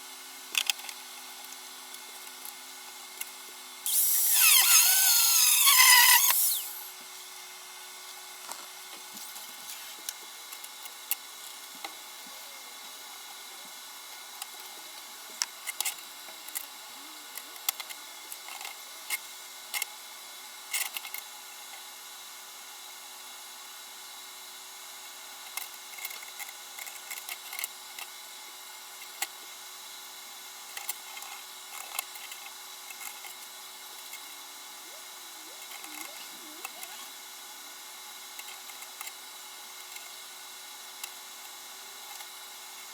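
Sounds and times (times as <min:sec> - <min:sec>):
power tool winding down: 0:03.9 - 0:06.9.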